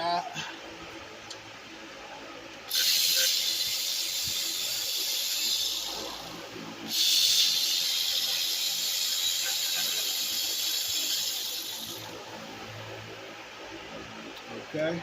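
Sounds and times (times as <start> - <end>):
steady rushing hiss: 2.7 - 13.4.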